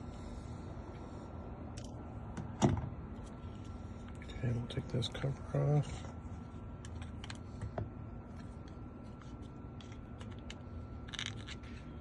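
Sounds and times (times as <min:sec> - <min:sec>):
faint steady hum: 0:00.0 - 0:12.0
small metal parts clicking: 0:10.2 - 0:11.7.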